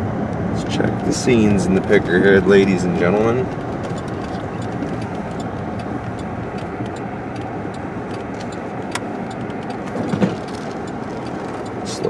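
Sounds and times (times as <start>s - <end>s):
car engine and tyre noise: 0.0s - 12.0s
faint ticks: 3.5s - 12.0s.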